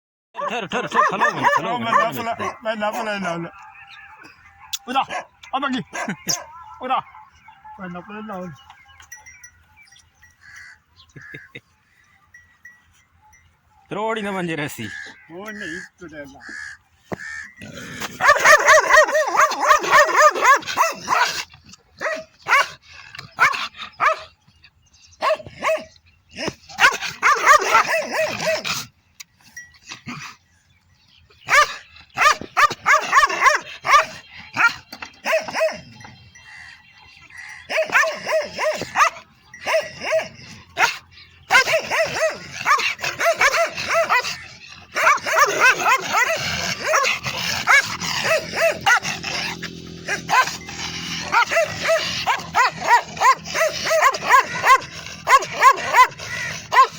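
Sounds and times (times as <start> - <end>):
dog barking: 0.4 - 3.0, 5.0 - 6.6, 18.2 - 21.4, 22.0 - 22.8, 23.4 - 24.3, 25.2 - 26.0, 26.8 - 28.6, 31.5 - 35.9, 37.7 - 56.9.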